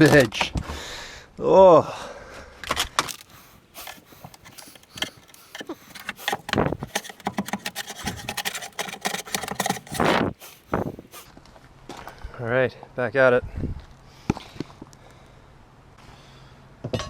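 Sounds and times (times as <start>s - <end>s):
clatter of plywood and tools: 3.0s - 11.3s
wood scraping: 3.1s - 11.3s.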